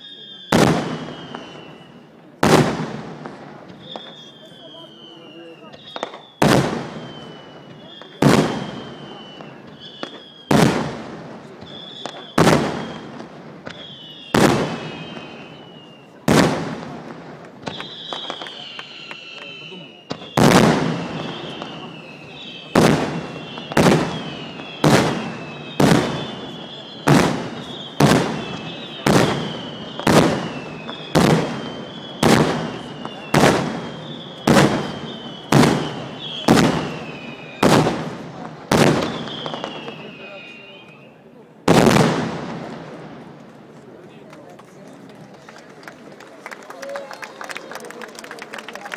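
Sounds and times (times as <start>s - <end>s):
fireworks whistling: 0.0s - 44.0s
fireworks crackling: 0.0s - 48.9s
fireworks booming: 0.2s - 44.0s.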